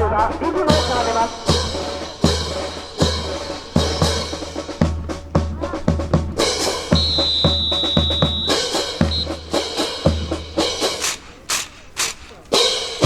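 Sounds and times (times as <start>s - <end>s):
bass drum and snare beat: 0.0s - 13.0s
rifles clacking: 0.0s - 13.0s
high whistle-like tone: 6.4s - 12.3s.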